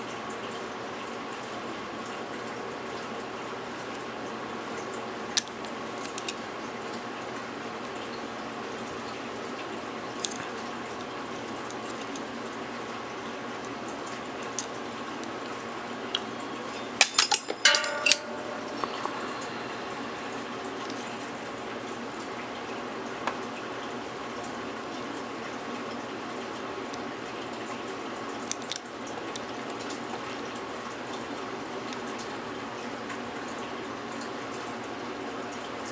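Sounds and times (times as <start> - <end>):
metal clicks and rattles: 16.6 - 19.4
lock picking metallic clicks: 16.7 - 18.9, 28.5 - 28.8.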